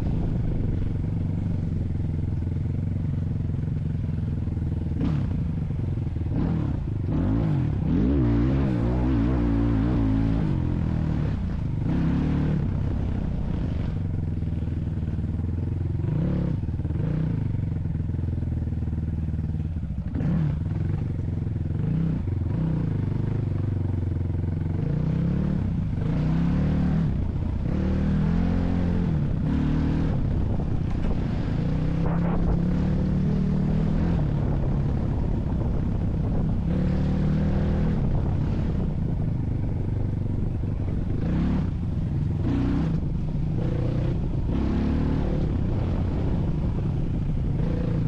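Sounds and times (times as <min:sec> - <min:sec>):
vehicle engine revving: 0:04.8 - 0:15.0, 0:20.0 - 0:23.7, 0:24.5 - 0:48.0.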